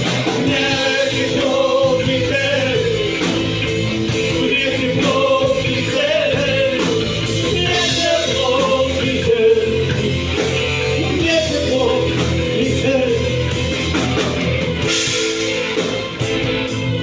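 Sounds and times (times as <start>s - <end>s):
live rock band: 0.0s - 17.0s
person singing: 0.2s - 13.5s.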